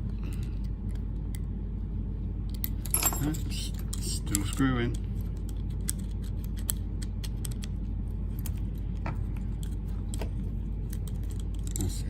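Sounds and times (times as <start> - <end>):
steady low hum: 0.0 - 12.0
allen key clicking and scraping: 2.5 - 12.0.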